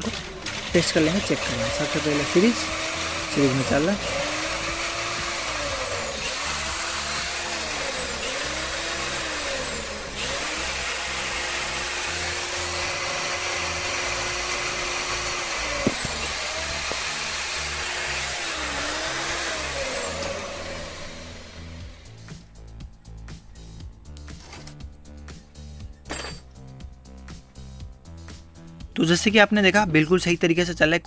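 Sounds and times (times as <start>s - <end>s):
electric motor whine: 0.0s - 24.2s.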